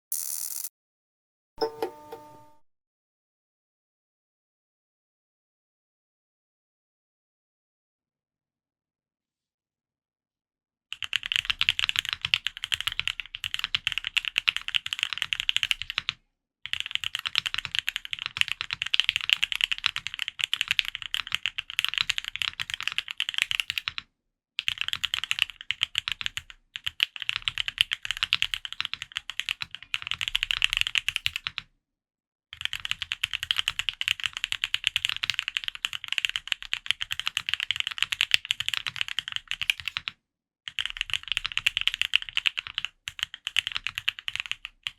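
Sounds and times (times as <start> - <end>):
fast mechanical keyboard typing: 11.0 - 24.0, 24.6 - 31.6, 32.6 - 44.9.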